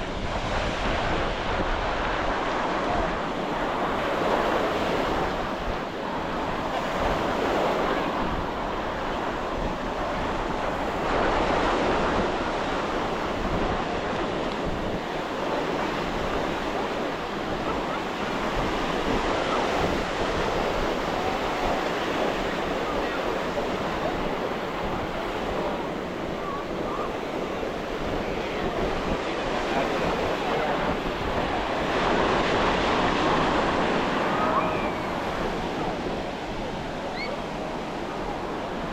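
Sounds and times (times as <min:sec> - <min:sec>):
ocean surf breaking: 0:00.0 - 0:38.9
wind buffeting microphone: 0:00.0 - 0:38.9.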